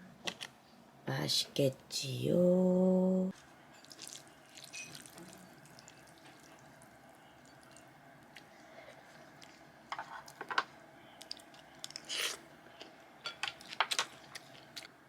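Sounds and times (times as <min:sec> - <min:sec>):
food crunching: 0:03.4 - 0:10.5, 0:11.2 - 0:15.0.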